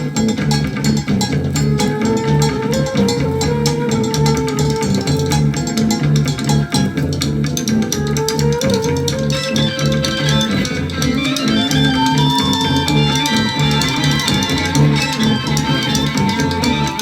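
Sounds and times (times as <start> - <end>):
held electric guitar lead note: 0.0 - 17.0
psychedelic rock music: 0.0 - 17.0.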